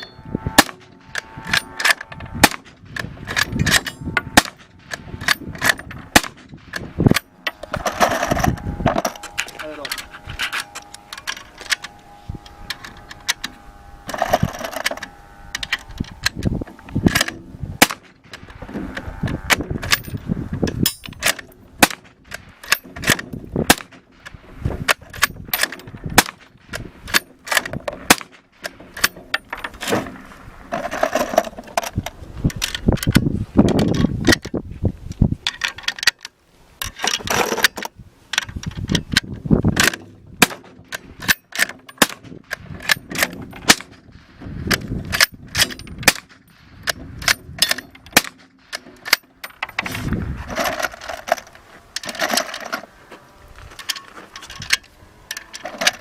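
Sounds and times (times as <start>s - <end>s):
suppressed gunshots: 39.8s - 40.9s.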